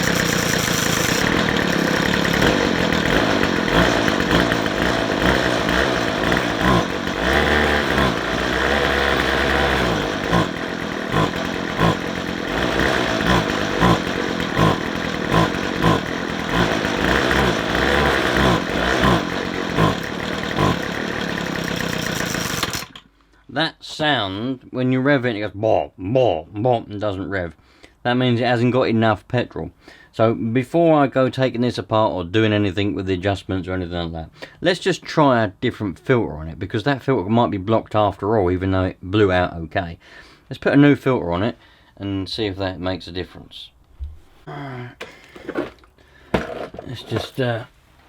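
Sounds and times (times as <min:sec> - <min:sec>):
strimmer engine stumbling: 0:00.0 - 0:23.2, 0:45.0 - 0:47.7.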